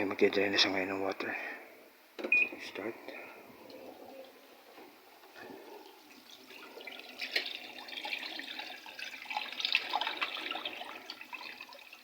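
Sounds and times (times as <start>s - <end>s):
water draining from washing machine: 3.5s - 12.0s.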